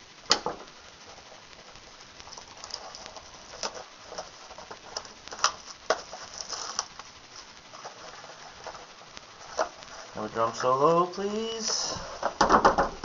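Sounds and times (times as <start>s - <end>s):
packaging rustling: 1.0s - 10.3s.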